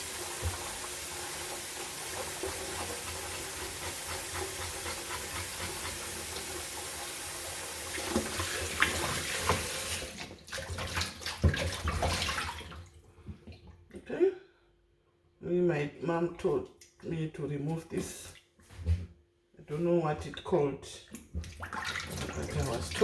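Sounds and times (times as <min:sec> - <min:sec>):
tap running into a sink: 0:00.0 - 0:07.2, 0:07.9 - 0:12.2
knocks and splashes: 0:07.9 - 0:13.6, 0:21.2 - 0:23.0.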